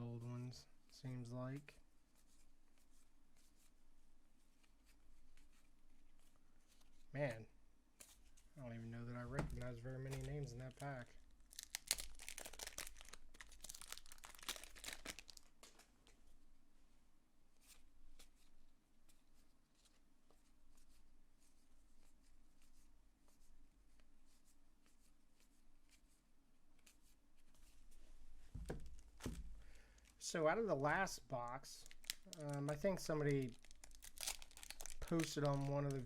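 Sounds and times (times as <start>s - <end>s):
cards rustling: 8.0s - 16.2s, 31.7s - 36.0s
wrapper tearing and crinkling: 9.5s - 15.9s, 31.8s - 36.0s.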